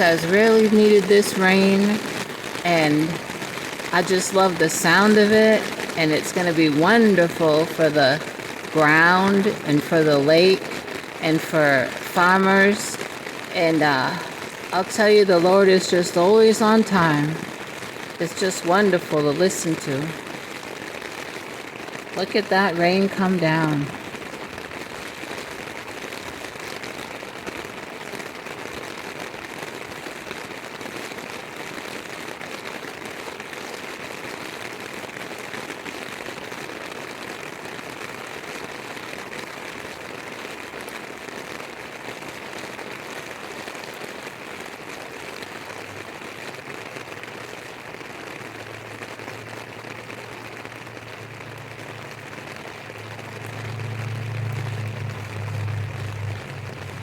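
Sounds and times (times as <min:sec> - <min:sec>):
heavy rain pouring: 0:00.0 - 0:57.0
low hum: 0:51.5 - 0:57.0.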